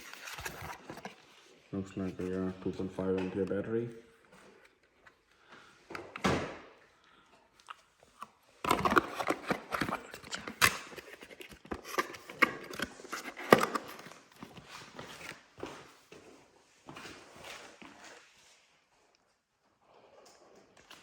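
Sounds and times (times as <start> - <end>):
packaging rustling: 0.0 - 2.4, 8.6 - 15.4.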